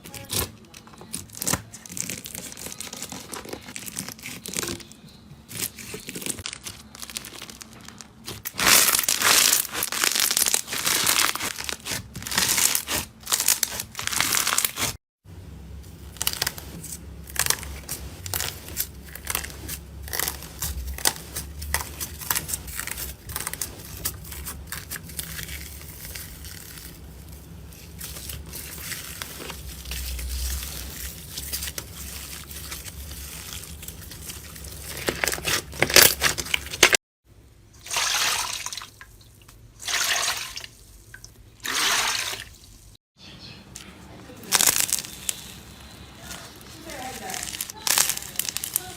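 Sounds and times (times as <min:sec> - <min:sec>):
slime crackling and crunching: 0:01.0 - 0:04.9, 0:05.5 - 0:15.0, 0:15.8 - 0:37.0, 0:44.2 - 0:48.9
low hum: 0:15.3 - 0:35.3.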